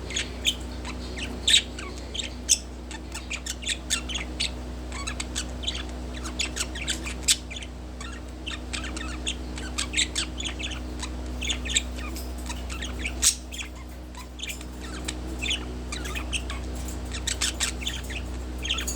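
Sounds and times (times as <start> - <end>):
budgerigar chattering: 0.0 - 18.9
steady low hum: 0.0 - 18.9.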